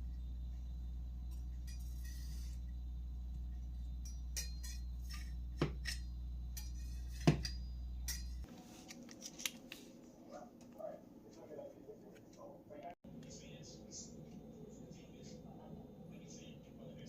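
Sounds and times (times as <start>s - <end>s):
steady low hum: 0.0s - 17.0s
utensils knocking against dishes: 4.0s - 8.5s.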